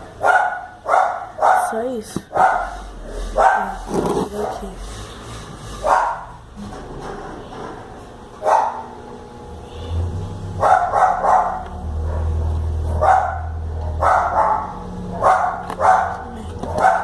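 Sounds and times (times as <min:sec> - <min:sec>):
dog barking: 0:00.2 - 0:04.7, 0:05.8 - 0:06.4, 0:08.4 - 0:09.0, 0:10.6 - 0:17.0.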